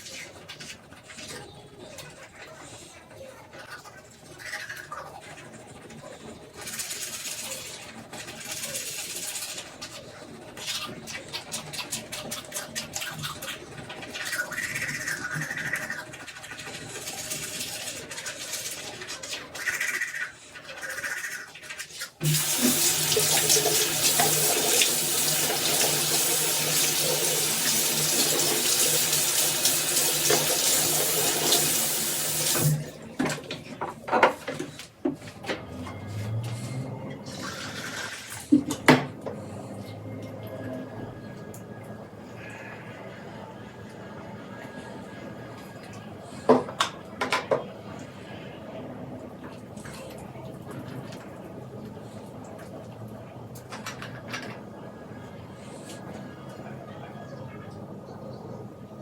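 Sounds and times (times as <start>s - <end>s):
water running into a sink: 13.7s - 33.1s, 37.3s - 39.2s.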